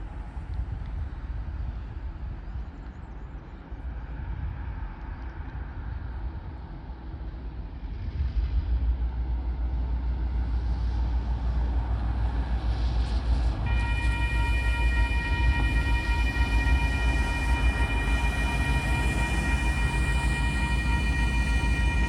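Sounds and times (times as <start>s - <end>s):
locomotive engine rumble: 0.0s - 22.0s
locomotive horn chord: 13.6s - 22.0s.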